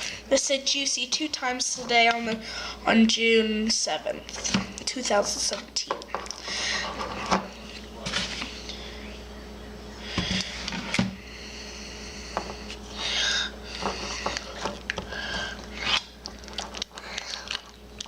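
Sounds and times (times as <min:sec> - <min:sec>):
slime squelching: 0:13.6 - 0:18.0.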